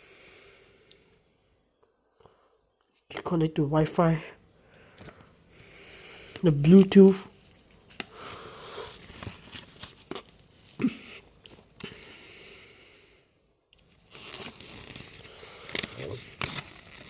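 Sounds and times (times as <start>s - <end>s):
soft rustling handling noise: 4.8s - 10.8s.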